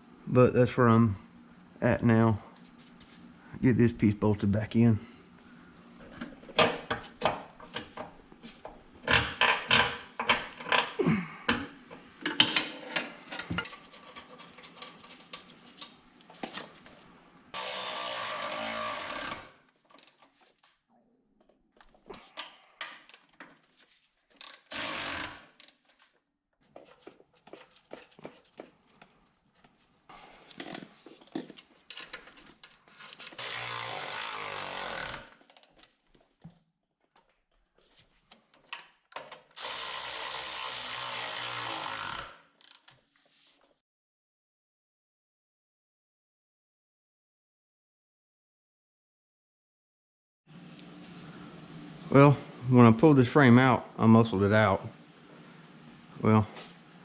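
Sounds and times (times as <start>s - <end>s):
power tool whirring: 17.6s - 19.6s, 24.5s - 25.6s, 33.3s - 35.4s, 39.6s - 42.4s.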